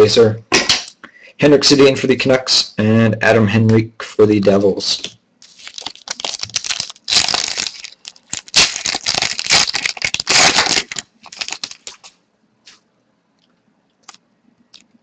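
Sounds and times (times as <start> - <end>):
foil wrapper tearing and crinkling: 5.4 - 12.2.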